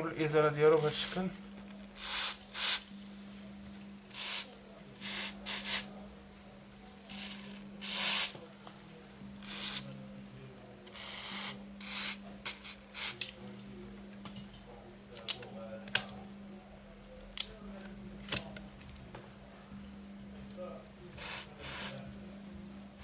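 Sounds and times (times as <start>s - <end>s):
faint low hum: 0.0s - 23.0s.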